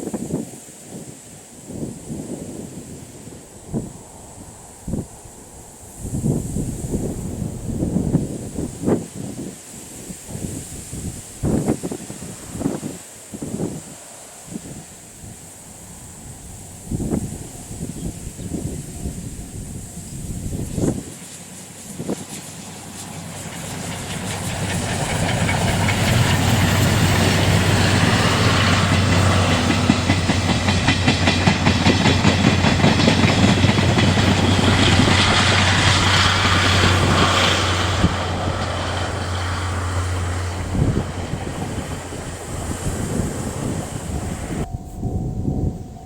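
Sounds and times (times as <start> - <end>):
steam train passing: 0.0 - 46.0
wheels clattering over rail joints: 22.2 - 44.7.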